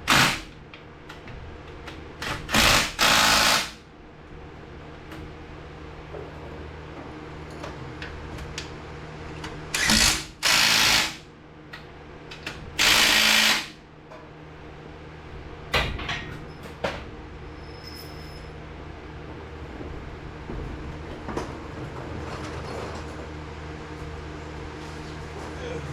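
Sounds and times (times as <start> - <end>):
power tool bursts: 0.0 - 0.5, 2.2 - 3.8, 9.8 - 11.3, 12.8 - 13.8
steady low hum: 0.0 - 15.8.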